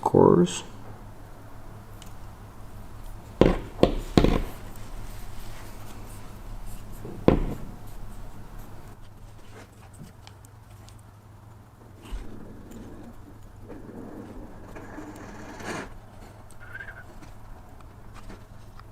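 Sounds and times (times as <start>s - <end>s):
steady low hum: 0.0s - 9.5s
sharp knocks: 0.6s - 9.0s.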